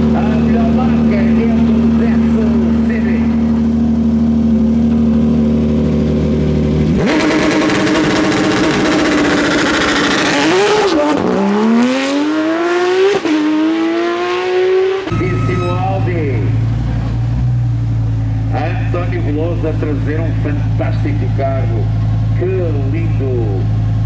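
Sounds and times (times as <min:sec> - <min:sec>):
engine idling: 0:00.0 - 0:10.3, 0:15.1 - 0:24.0
race car engine accelerating: 0:00.0 - 0:22.3.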